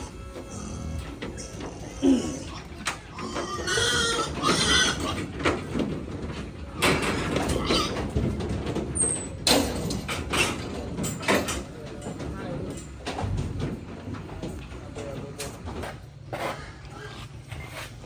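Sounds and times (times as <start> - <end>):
pigs squealing: 0.0 - 5.5, 7.4 - 8.2.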